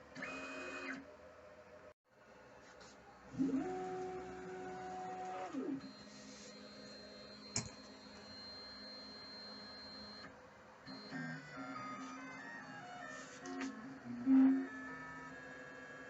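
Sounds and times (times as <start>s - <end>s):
motor hum with faint whine: 3.3s - 16.0s.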